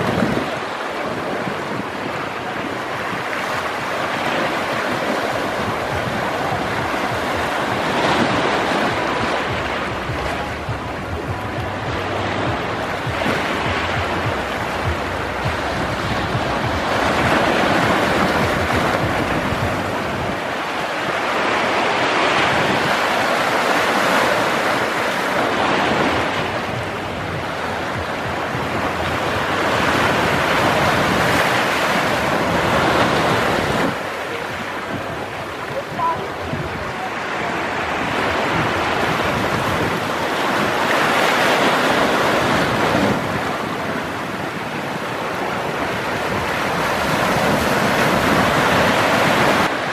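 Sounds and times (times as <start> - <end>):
sea waves breaking on rocks: 0.0 - 49.9.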